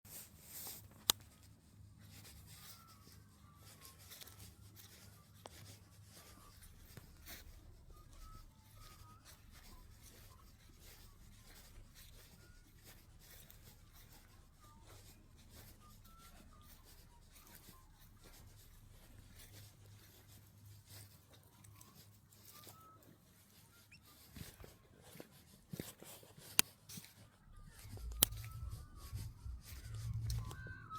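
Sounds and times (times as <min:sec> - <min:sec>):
faint low hum: 0:27.2 - 0:30.9
sharp click: 0:27.9 - 0:28.6.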